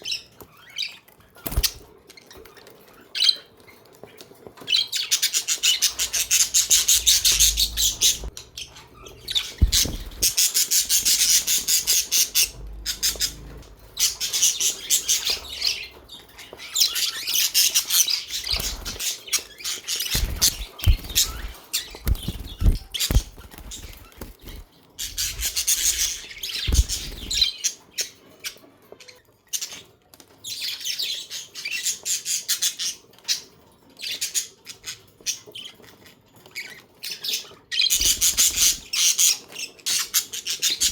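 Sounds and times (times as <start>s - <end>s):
budgerigars chirping and squawking: 0.0s - 29.9s, 30.5s - 40.9s
low thumps: 9.5s - 10.3s.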